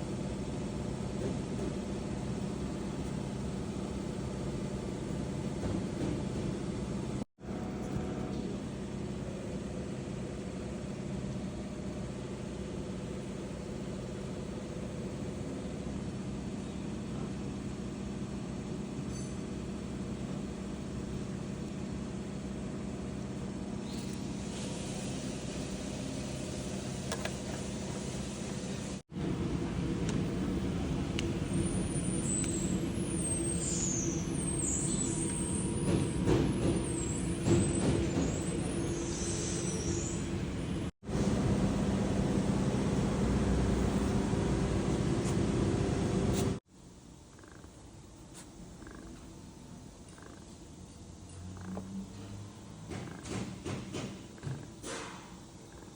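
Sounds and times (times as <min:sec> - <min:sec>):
vehicle engine rumble: 0:25.1 - 0:39.3, 0:40.2 - 0:46.6
vehicle engine running: 0:40.6 - 0:46.6.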